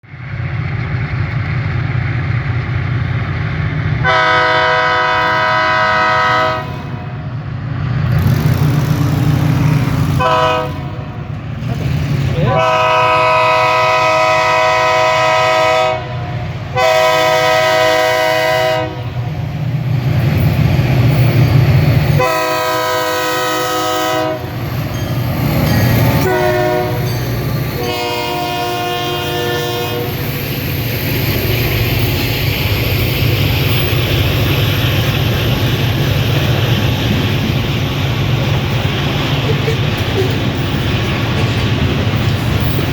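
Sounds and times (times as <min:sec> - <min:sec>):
passing train rumble: 0:00.0 - 0:42.9
locomotive air horn blasts: 0:04.0 - 0:07.2, 0:10.2 - 0:11.3, 0:12.4 - 0:19.3, 0:22.2 - 0:24.6, 0:26.2 - 0:27.1, 0:27.7 - 0:30.2.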